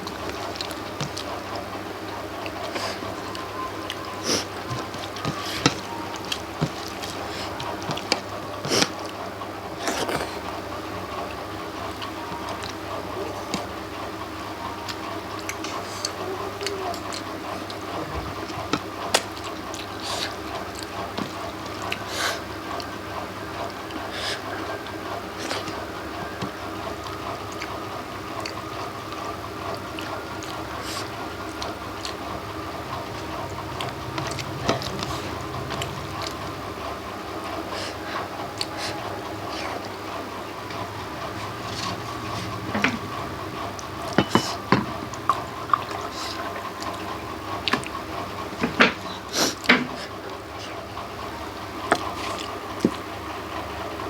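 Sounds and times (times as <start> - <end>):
person chewing: 0.0 - 11.2, 13.4 - 50.9, 51.5 - 53.2
steady background hum: 0.0 - 54.0
wet chewing and lip smacks: 37.4 - 48.2.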